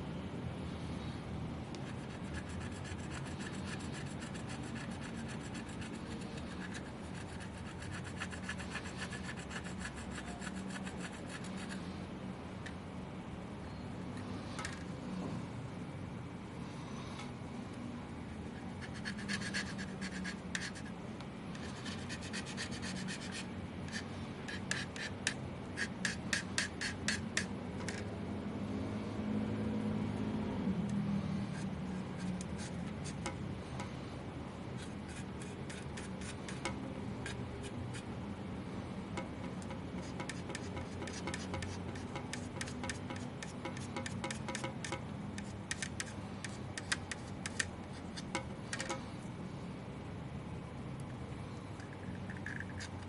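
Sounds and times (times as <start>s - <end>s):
steady low hum: 0.0s - 53.0s
rubbing and scraping: 1.8s - 12.0s, 18.4s - 28.1s, 31.3s - 34.0s, 34.8s - 38.1s, 39.2s - 49.1s, 51.8s - 53.0s.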